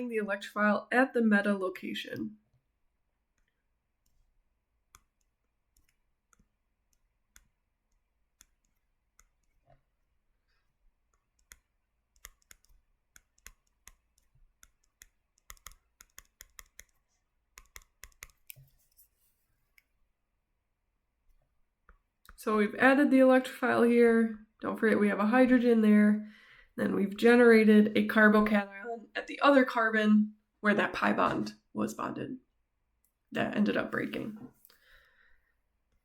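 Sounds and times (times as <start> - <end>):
computer mouse clicks: 4.9 - 9.9, 11.1 - 19.1.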